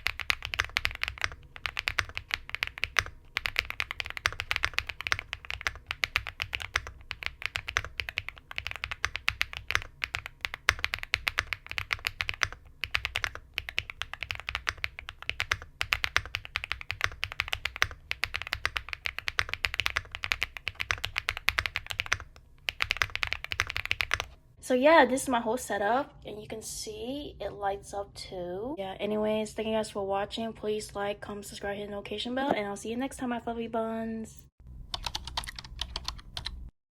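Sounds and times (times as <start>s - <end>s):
mechanical keyboard typing: 0.0s - 24.3s, 34.9s - 36.7s.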